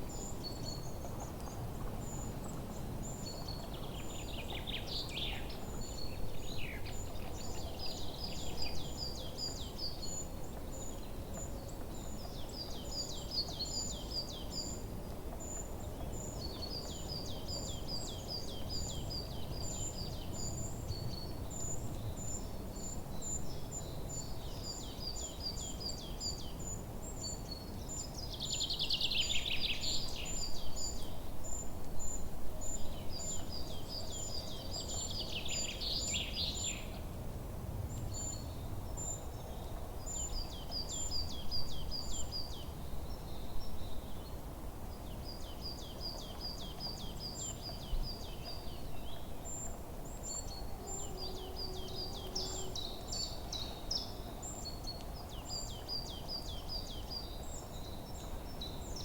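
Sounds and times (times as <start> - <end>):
low background noise: 0.0 - 59.0.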